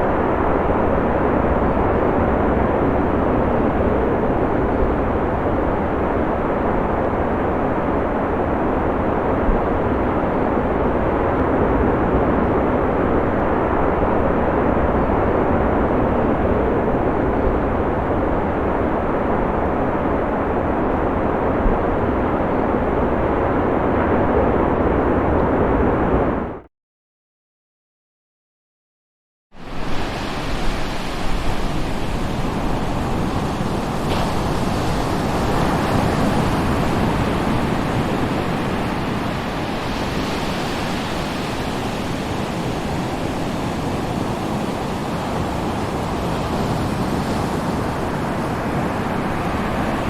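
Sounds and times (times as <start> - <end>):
heavy ocean surf roaring: 29.6 - 50.0.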